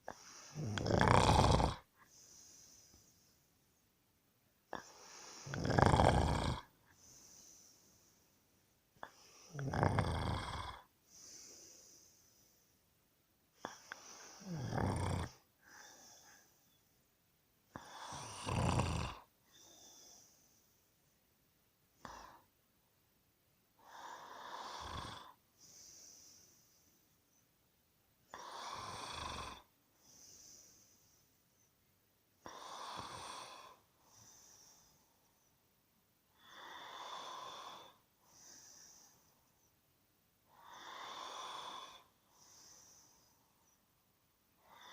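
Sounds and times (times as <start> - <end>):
person snoring: 0.1 - 1.9, 4.7 - 6.7, 9.0 - 10.9, 13.6 - 16.5, 17.7 - 20.3, 23.8 - 26.2, 28.3 - 30.8, 32.4 - 34.9, 36.4 - 39.2, 40.5 - 43.8.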